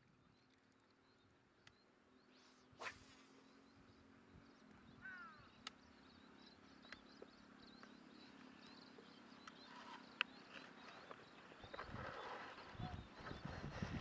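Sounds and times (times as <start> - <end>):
bird chirps: 0.2 - 13.9.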